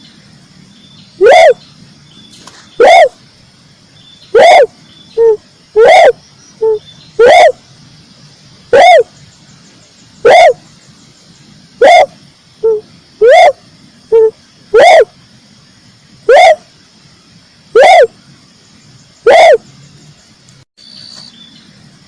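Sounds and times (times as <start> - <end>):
dove calling: 1.0 - 3.2, 4.1 - 7.6, 8.5 - 15.2, 16.2 - 16.7, 17.7 - 18.2, 19.0 - 20.2.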